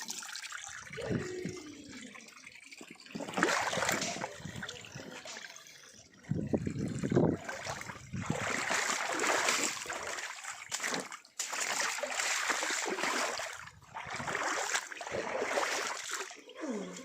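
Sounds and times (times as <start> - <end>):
rushing splashing water: 3.1 - 4.6, 7.0 - 16.4.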